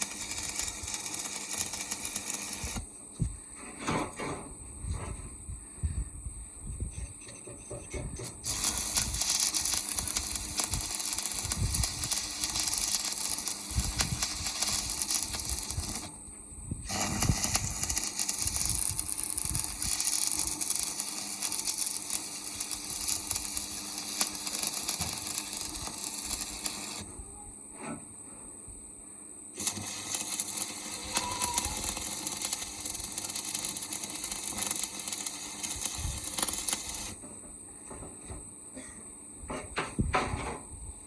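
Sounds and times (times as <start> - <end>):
arc welding crackling hiss: 0.0 - 4.0, 8.1 - 27.2, 29.5 - 37.3.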